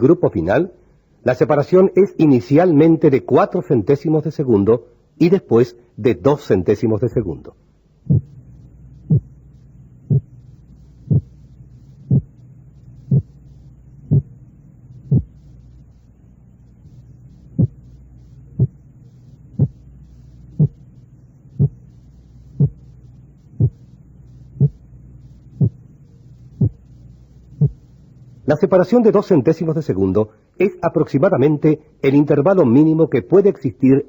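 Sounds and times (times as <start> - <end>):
steady low hum: 0.0 - 34.0
paired split heart sounds: 8.0 - 28.3.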